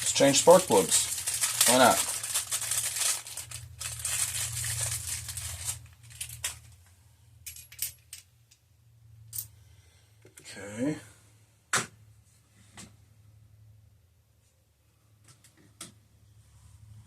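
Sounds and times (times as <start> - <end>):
packaging crinkling: 0.0 - 6.8.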